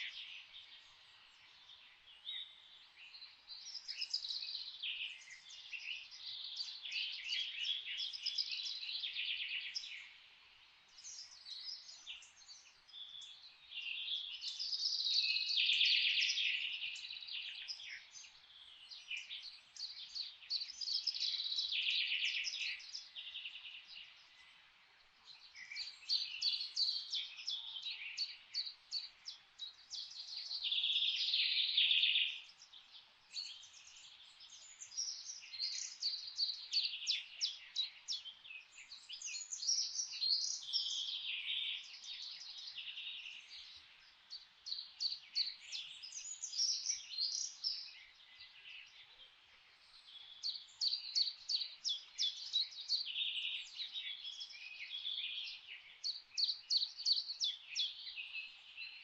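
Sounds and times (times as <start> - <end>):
songbirds chirping and trilling: 0.0 - 59.0.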